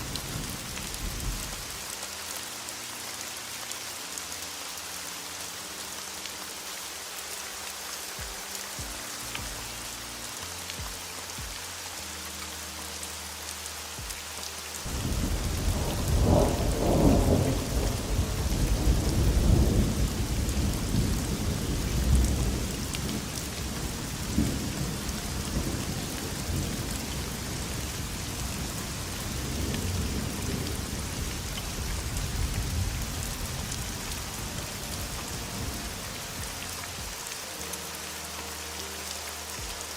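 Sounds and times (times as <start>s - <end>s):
heavy rain: 0.0s - 39.9s
thunder rumbling: 14.9s - 36.6s.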